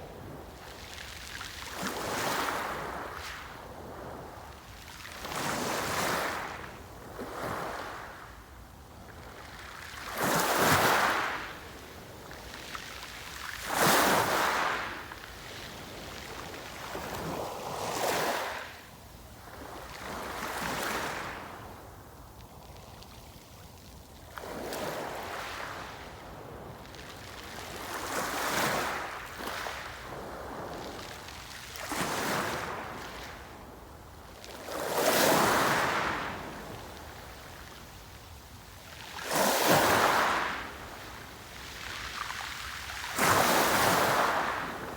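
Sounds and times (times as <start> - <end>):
sea waves breaking on shore: 39.0 - 44.9.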